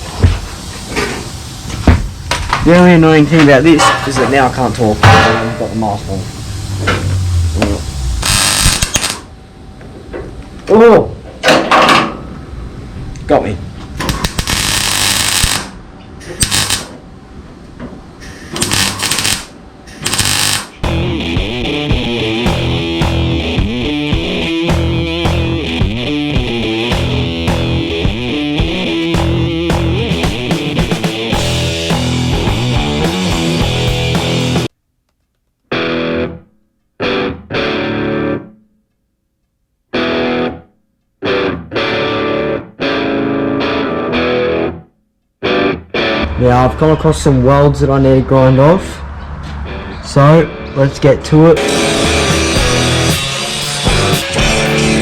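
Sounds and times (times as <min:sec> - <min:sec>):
distorted electric guitar chords: 0:06.2 - 0:09.3, 0:20.0 - 0:34.7, 0:35.7 - 0:38.5, 0:40.0 - 0:40.6, 0:41.2 - 0:46.8, 0:51.6 - 0:55.0
welding arc crackle: 0:07.5 - 0:09.3, 0:14.0 - 0:17.0, 0:18.2 - 0:21.5.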